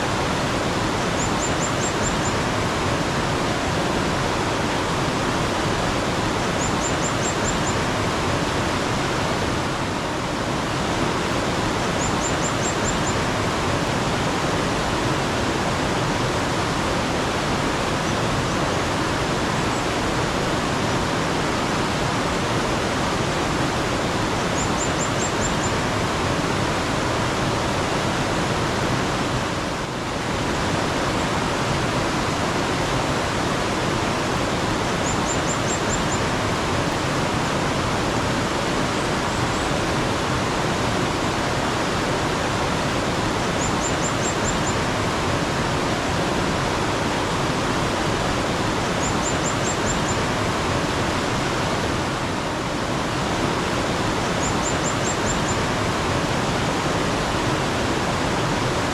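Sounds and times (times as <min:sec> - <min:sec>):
mountain stream running: 0:00.0 - 0:58.9
bird trilling: 0:06.6 - 0:07.8, 0:12.0 - 0:13.2.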